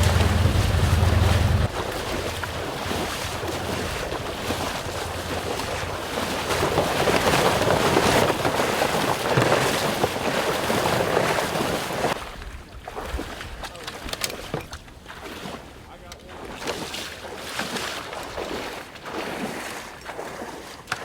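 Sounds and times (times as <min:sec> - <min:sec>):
low motor hum: 0:00.0 - 0:01.8
wind buffeting microphone: 0:00.0 - 0:01.8.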